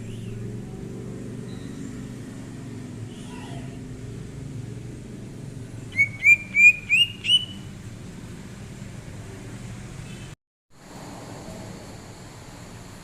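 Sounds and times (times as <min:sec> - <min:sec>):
bird whistling rising notes: 0:05.9 - 0:07.7.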